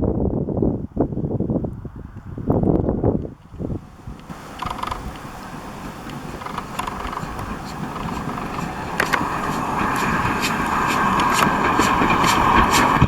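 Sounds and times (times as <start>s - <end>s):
steam train approaching: 3.8s - 13.0s
high-pitched steam hiss: 4.0s - 13.0s.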